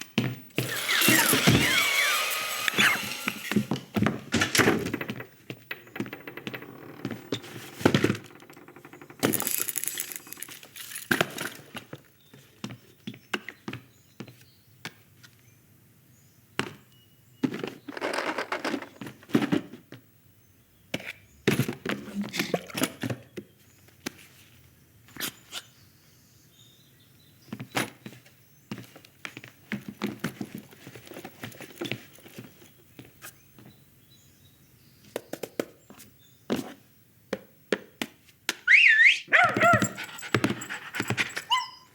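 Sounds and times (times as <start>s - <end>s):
small objects knocking and clacking: 4.4s - 11.8s.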